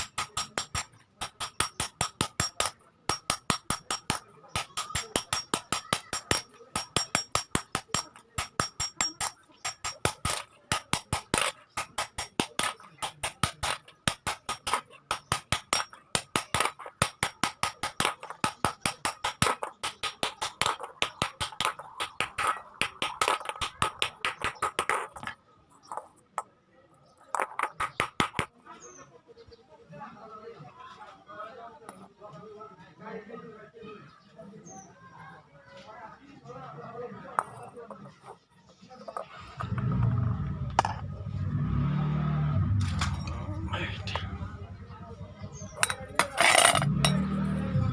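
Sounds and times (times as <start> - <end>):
hammer striking iron on anvil: 0.0 - 21.5.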